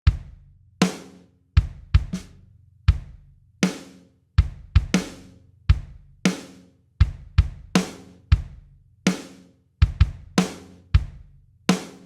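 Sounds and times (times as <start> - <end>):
bass drum thuds: 0.0 - 0.4, 1.6 - 2.3, 2.9 - 3.2, 4.4 - 6.1, 7.0 - 8.6, 9.8 - 10.4, 11.0 - 11.2.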